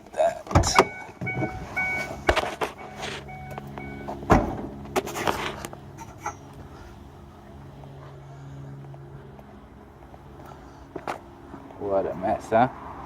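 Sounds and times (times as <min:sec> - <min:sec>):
truck engine running: 0:00.0 - 0:12.1
truck door opening and shutting: 0:00.2 - 0:06.4
warning chime beeping: 0:00.7 - 0:04.2.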